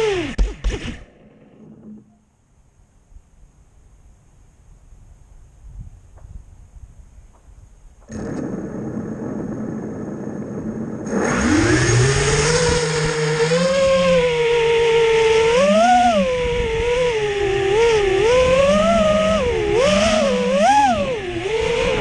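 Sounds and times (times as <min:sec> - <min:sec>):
drone motors whining: 0:00.0 - 0:02.3, 0:08.0 - 0:22.0.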